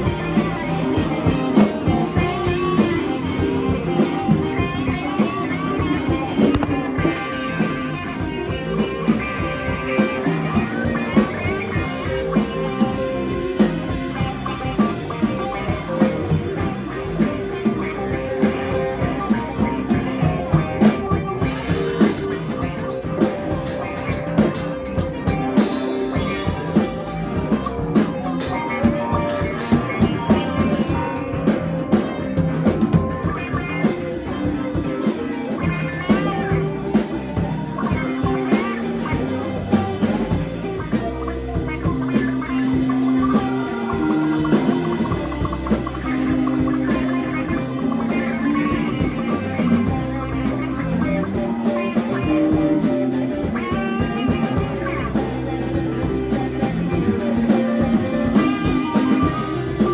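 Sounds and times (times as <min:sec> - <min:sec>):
drum kit steady beat: 0:00.0 - 0:59.9
guitar: 0:00.0 - 0:59.9.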